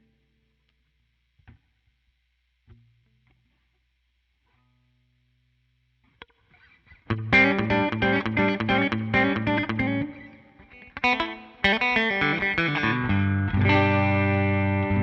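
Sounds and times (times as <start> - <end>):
electric guitar playing: 6.2 - 15.0.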